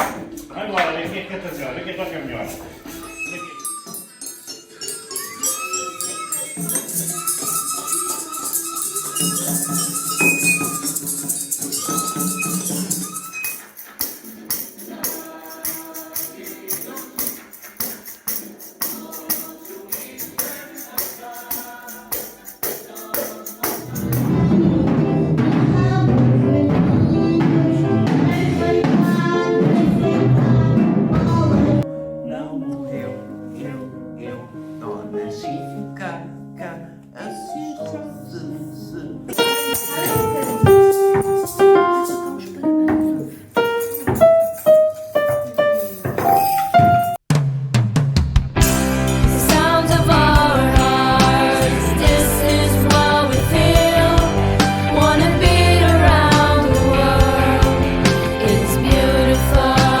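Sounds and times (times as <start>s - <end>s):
music with jingling percussion: 2.8s - 24.5s, 39.4s - 47.2s, 48.6s - 60.0s.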